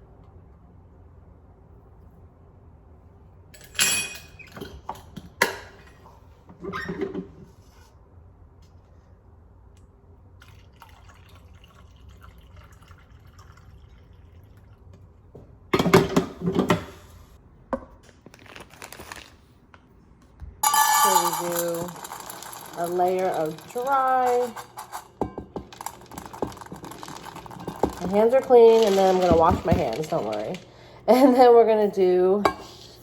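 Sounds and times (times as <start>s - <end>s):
dry dog food clattering into bowls: 20.6s - 31.3s.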